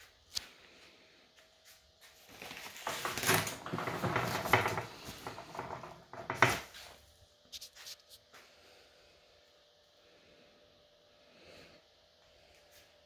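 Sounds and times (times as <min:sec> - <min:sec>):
packaging rustling and clattering: 0:02.2 - 0:06.8.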